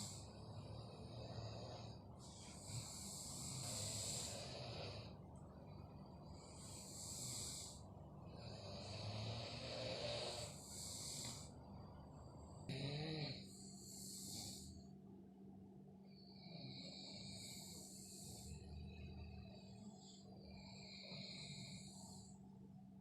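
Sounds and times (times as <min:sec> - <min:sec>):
people snoring: 0:00.0 - 0:05.1, 0:06.3 - 0:11.5, 0:12.6 - 0:14.8, 0:16.4 - 0:19.8, 0:20.5 - 0:22.3.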